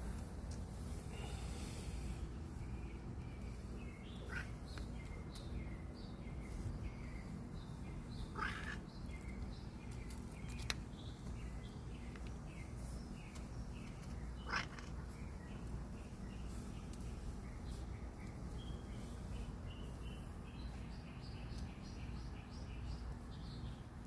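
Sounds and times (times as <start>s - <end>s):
cat croaking chirps: 4.2s - 4.6s, 8.3s - 8.8s, 14.4s - 15.0s.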